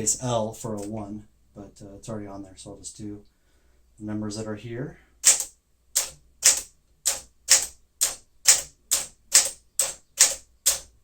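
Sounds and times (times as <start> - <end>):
typewriter keys striking: 5.2 - 11.0.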